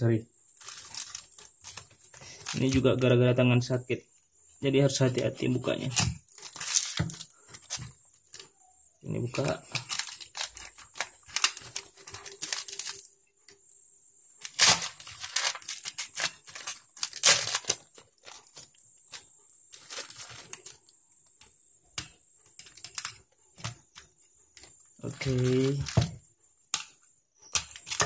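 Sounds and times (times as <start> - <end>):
wrapping crumpled by hand: 0.5 - 3.1, 5.0 - 8.5, 9.2 - 13.1, 14.4 - 20.9
packing tape tearing: 5.8 - 7.9, 9.4 - 13.1, 14.4 - 18.7.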